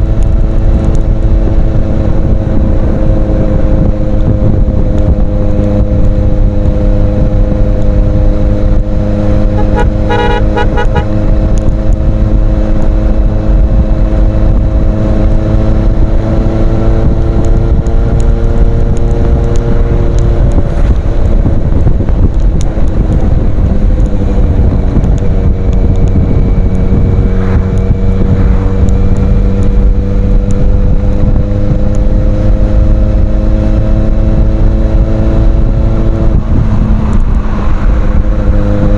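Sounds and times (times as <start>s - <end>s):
motorcycle engine drone: 0.0s - 38.9s
horn-like beeping: 9.5s - 11.2s.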